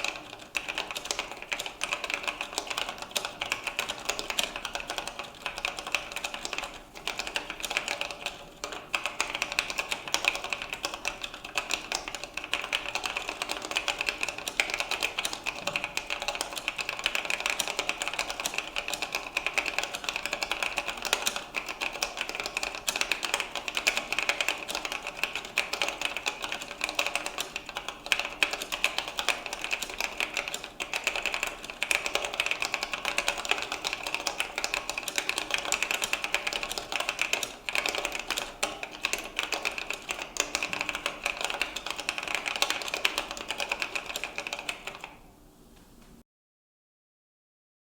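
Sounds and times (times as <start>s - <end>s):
fast keyboard typing: 0.0s - 45.2s.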